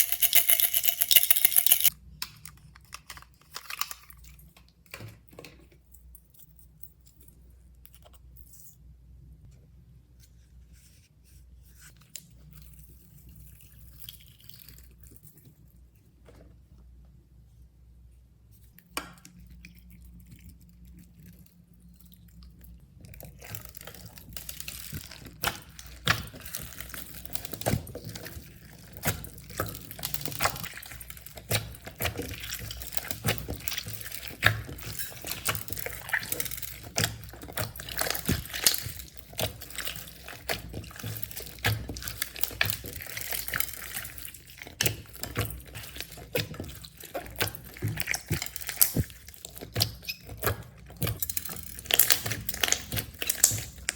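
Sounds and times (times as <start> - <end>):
slime squishing by hand: 18.5 - 53.9.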